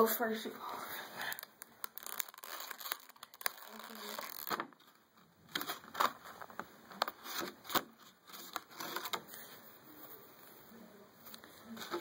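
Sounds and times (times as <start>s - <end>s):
packaging crinkling and rustling: 1.2s - 9.2s.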